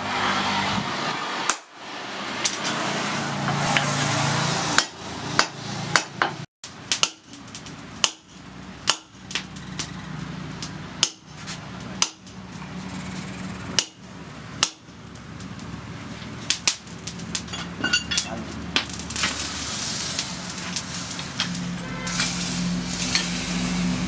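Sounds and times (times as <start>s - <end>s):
hammer striking steel on anvil: 4.8s - 7.4s, 8.0s - 9.5s, 17.5s - 18.4s.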